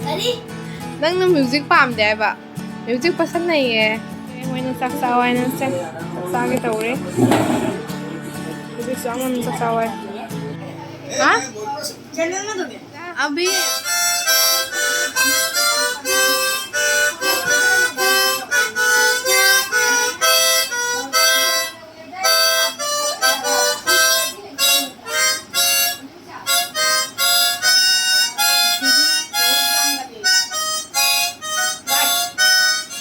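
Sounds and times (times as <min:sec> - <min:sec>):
harmonica tune: 0:07.0 - 0:08.2, 0:13.4 - 0:33.0.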